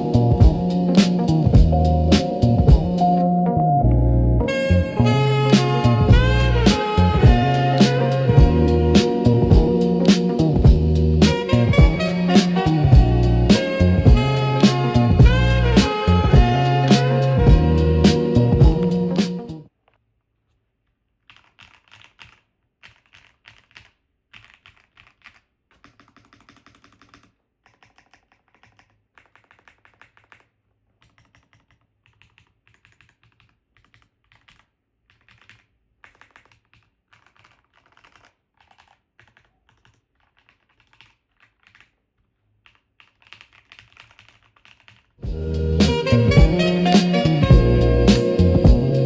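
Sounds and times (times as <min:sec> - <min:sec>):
loud music: 0:00.0 - 0:19.6, 0:45.2 - 0:49.0
mechanical keyboard typing: 0:21.2 - 0:45.2.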